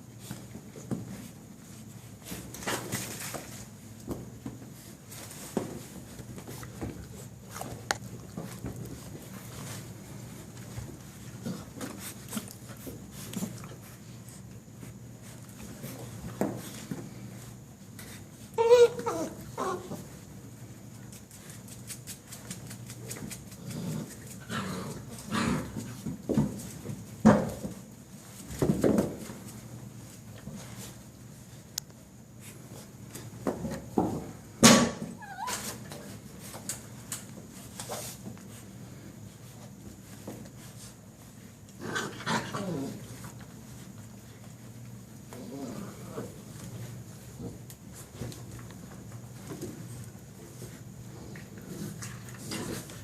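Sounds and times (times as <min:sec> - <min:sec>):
puppy crying: 0:18.6 - 0:20.0, 0:35.1 - 0:35.8
puppies growling and yipping: 0:18.6 - 0:20.2, 0:23.5 - 0:25.8, 0:35.1 - 0:35.8, 0:41.7 - 0:43.3, 0:45.3 - 0:46.4
puppies knocking and scuffing: 0:21.1 - 0:31.0.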